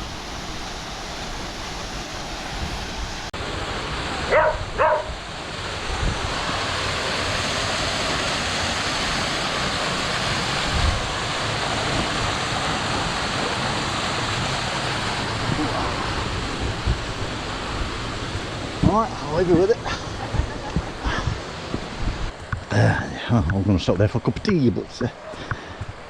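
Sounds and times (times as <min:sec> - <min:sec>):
waterfall roaring: 0:00.0 - 0:26.0
sharp barking calls: 0:04.3 - 0:05.2.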